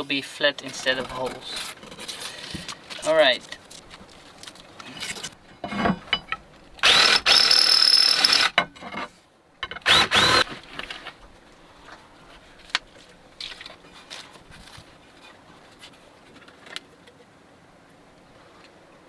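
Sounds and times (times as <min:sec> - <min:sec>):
small electric power tool running: 0:06.8 - 0:08.5, 0:09.8 - 0:10.5.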